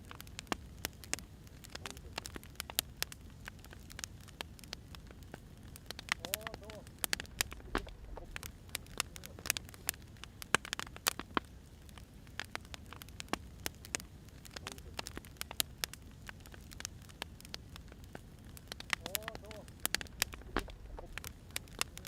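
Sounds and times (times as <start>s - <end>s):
fire crackling: 0.0s - 22.0s
low steady rumble: 4.9s - 10.6s, 15.7s - 22.0s.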